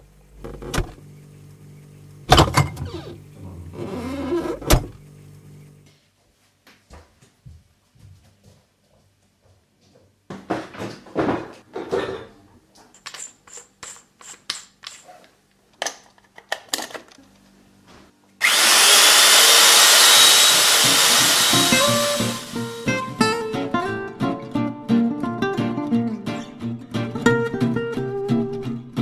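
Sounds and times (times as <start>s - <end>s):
electric drill boring: 18.4s - 23.1s.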